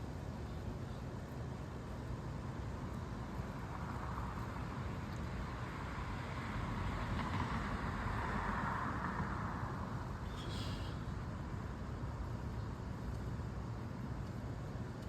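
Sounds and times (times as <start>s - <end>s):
low traffic rumble: 0.0s - 15.0s
car passing: 3.6s - 11.1s.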